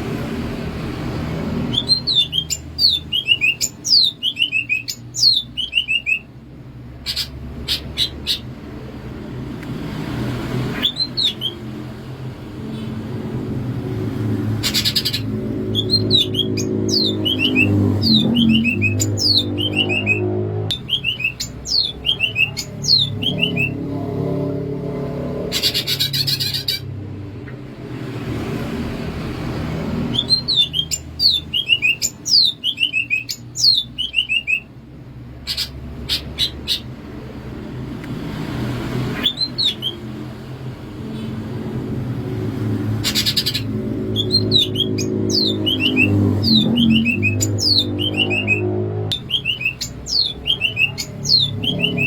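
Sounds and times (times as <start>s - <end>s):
harsh buzzy bird calls: 1.4s - 8.9s, 10.4s - 11.9s, 12.6s - 27.6s, 29.5s - 37.6s, 38.6s - 40.3s, 42.6s - 52.0s
bird singing high whistled notes: 1.7s - 6.3s, 10.7s - 11.6s, 14.7s - 23.8s, 30.1s - 34.7s, 43.1s - 52.0s.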